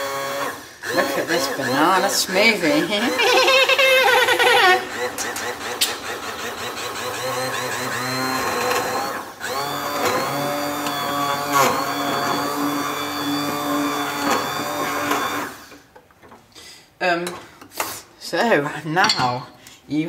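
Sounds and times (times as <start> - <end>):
electric hand blender whirring: 0.0 - 15.9.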